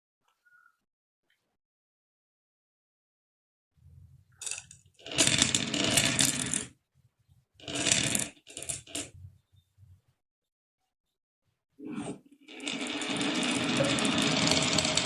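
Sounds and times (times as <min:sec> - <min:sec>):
marbles rolling down wooden run: 0:04.4 - 0:06.7, 0:07.6 - 0:09.1, 0:12.4 - 0:15.0
dense rattling clicks: 0:12.6 - 0:15.0.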